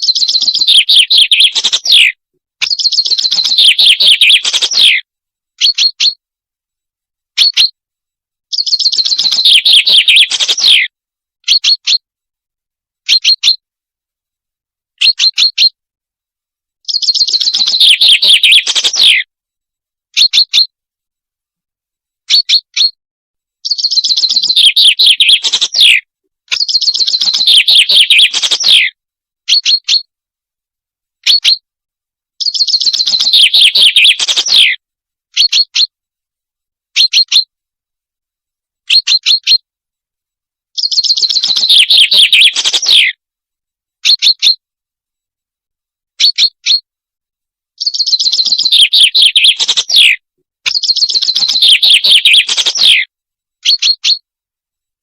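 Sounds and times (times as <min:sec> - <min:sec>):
songbird trilling: 0:00.0 - 0:05.0, 0:05.6 - 0:06.2, 0:07.4 - 0:07.7, 0:08.5 - 0:10.9, 0:11.5 - 0:12.0, 0:13.1 - 0:13.6, 0:15.0 - 0:15.8, 0:16.8 - 0:19.2, 0:20.2 - 0:20.7, 0:22.3 - 0:23.0, 0:23.6 - 0:28.9, 0:29.5 - 0:30.0, 0:31.3 - 0:31.6, 0:32.4 - 0:34.8, 0:35.4 - 0:35.9, 0:40.8 - 0:43.1, 0:46.2 - 0:46.8, 0:47.8 - 0:53.0, 0:53.6 - 0:54.2.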